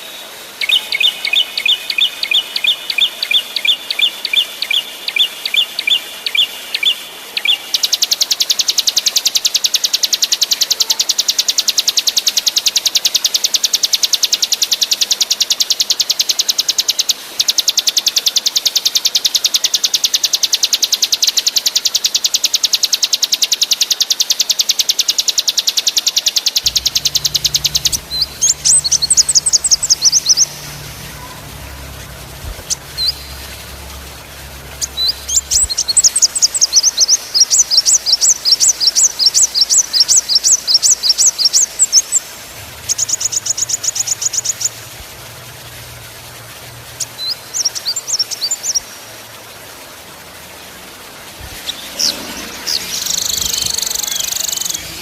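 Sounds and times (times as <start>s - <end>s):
songbird high chirps: 0.6s - 12.3s, 13.3s - 44.9s, 51.5s - 55.0s.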